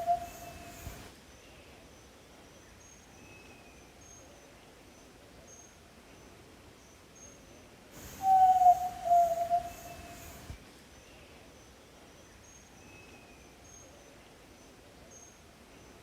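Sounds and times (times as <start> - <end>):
bird long low whistle: 0.0 - 1.0, 8.1 - 10.6
faint high chirps: 0.0 - 1.0, 8.0 - 10.6
thin high whistle: 0.0 - 1.0, 8.1 - 10.6.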